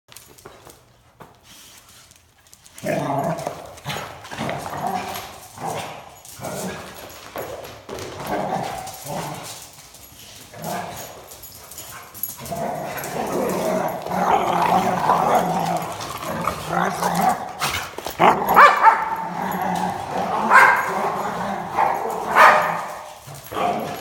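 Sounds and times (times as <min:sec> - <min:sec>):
dog barking: 0:18.2 - 0:19.2, 0:20.3 - 0:24.0.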